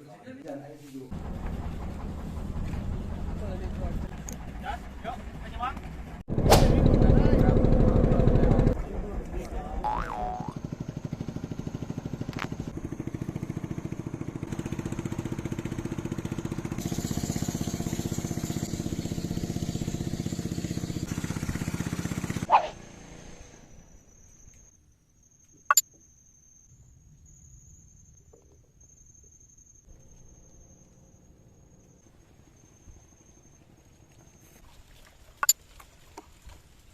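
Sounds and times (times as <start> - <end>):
motorcycle engine running: 1.1 - 22.9.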